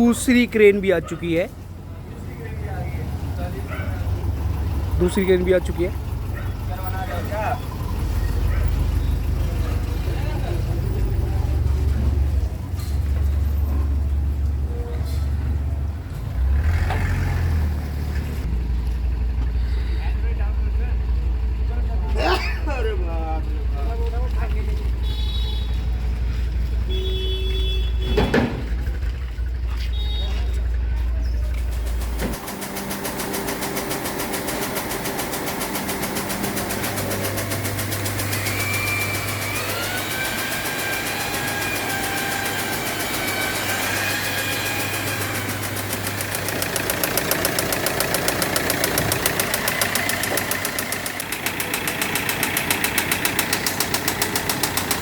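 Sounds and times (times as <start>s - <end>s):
heavy vehicle engine rumbling: 0.0s - 55.0s
street traffic: 0.0s - 55.0s
rapid knocking tick: 32.0s - 55.0s.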